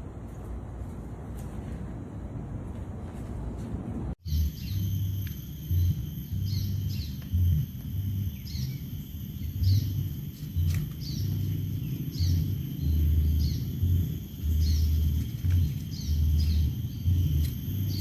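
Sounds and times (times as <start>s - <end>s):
low steady rumble: 0.0s - 18.0s
bird chirps: 4.2s - 18.0s
high-pitched ringing: 4.2s - 18.0s
background music with bass notes: 4.3s - 8.9s, 9.5s - 18.0s.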